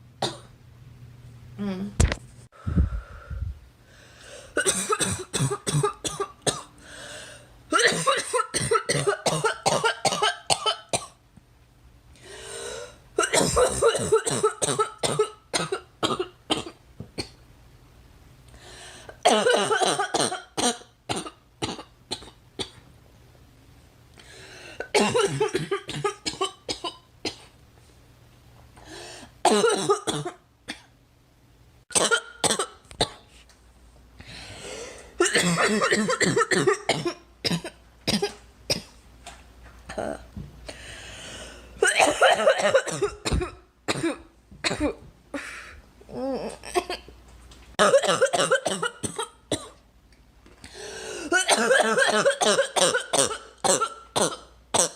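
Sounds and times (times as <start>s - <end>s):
girl coughing hard: 0.2s - 0.5s, 4.6s - 6.7s, 7.7s - 11.2s, 13.2s - 17.4s, 19.2s - 22.7s, 24.8s - 27.5s, 29.4s - 30.9s, 31.9s - 33.2s, 35.2s - 38.9s, 41.8s - 45.0s, 47.8s - 49.8s, 51.2s - 54.9s
girl drawing in breath: 2.5s - 4.6s, 6.8s - 7.5s, 34.2s - 35.2s, 40.7s - 41.8s.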